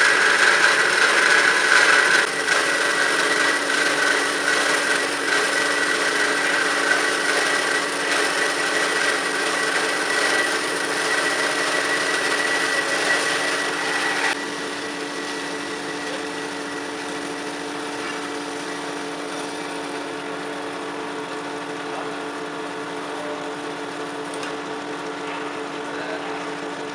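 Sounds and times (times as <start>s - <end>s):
saw cutting metal: 0.0s - 24.5s
band saw motor hum: 0.0s - 26.9s.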